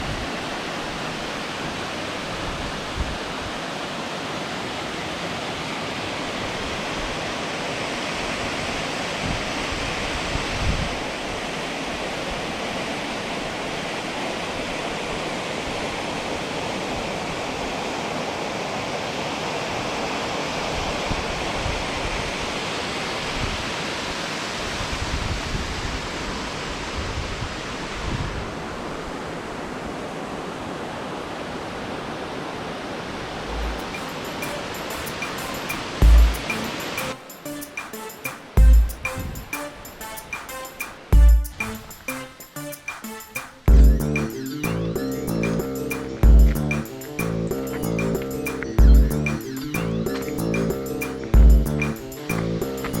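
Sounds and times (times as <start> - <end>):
waterfall rushing: 32.9 - 38.6.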